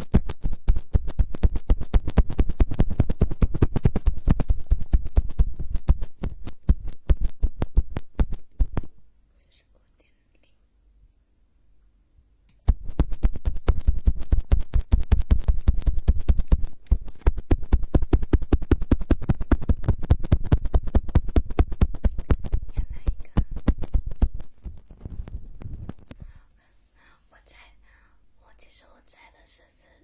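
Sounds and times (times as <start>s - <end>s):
scratching and tapping on microphone: 0.0s - 9.0s, 12.5s - 26.4s.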